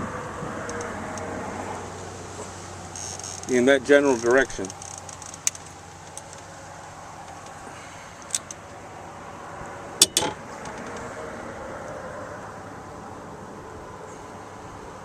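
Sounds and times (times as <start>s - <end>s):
wind noise: 0.0s - 1.5s.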